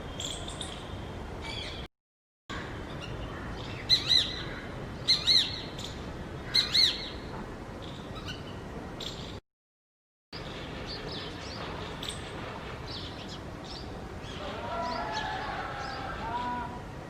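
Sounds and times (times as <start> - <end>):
steady background hiss: 2.6 - 9.4, 10.4 - 17.0.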